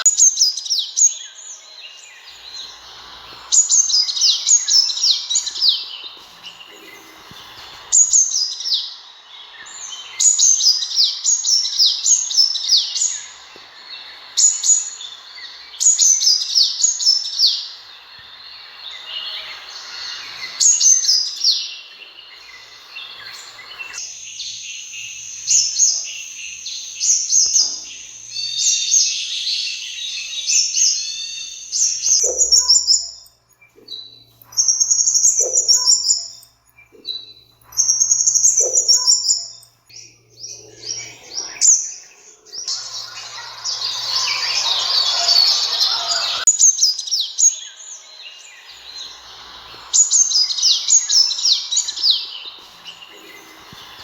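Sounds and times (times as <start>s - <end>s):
bird chirping and twittering: 0.0s - 54.0s.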